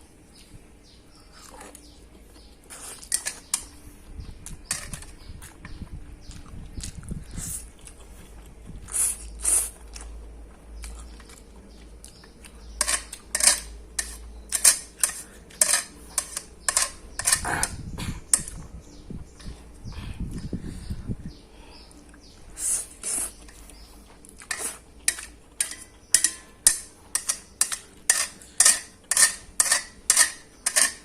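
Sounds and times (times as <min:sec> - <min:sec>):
chewing and smacking mouth noises: 0:01.3 - 0:13.8, 0:22.9 - 0:27.1.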